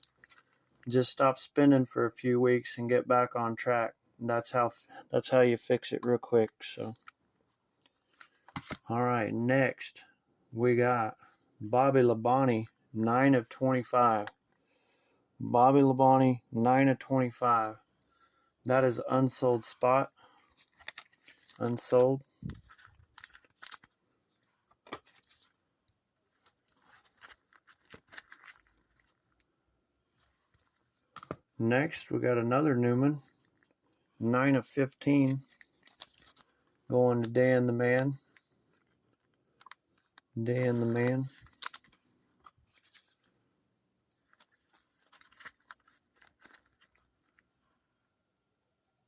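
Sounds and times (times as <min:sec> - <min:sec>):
cards and paper being handled: 0:00.0 - 0:00.9, 0:06.0 - 0:09.0, 0:19.4 - 0:29.5, 0:30.1 - 0:31.5, 0:33.2 - 0:43.4, 0:44.1 - 0:47.5
small items clicking and crinkling: 0:35.4 - 0:36.6.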